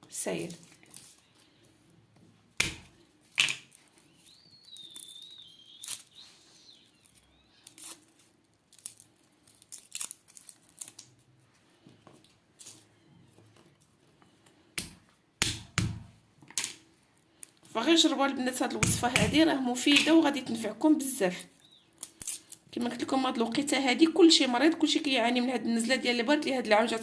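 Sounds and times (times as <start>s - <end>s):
garlic skins tearing and crackling: 2.6s - 11.4s, 21.5s - 22.7s.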